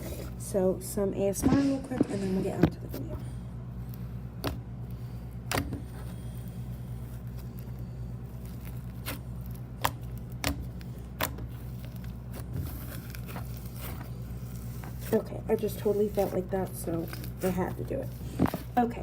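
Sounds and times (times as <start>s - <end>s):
steady low hum: 0.0s - 19.0s
hands squishing foamy slime: 4.3s - 19.0s.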